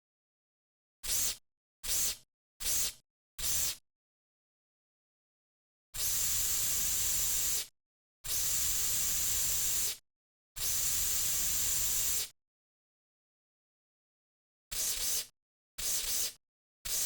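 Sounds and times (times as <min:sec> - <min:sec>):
aerosol can spraying: 0:01.0 - 0:03.8, 0:14.7 - 0:17.0.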